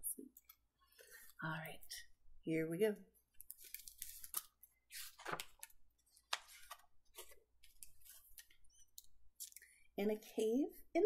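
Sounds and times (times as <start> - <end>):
book pages rustling: 3.4 - 9.6.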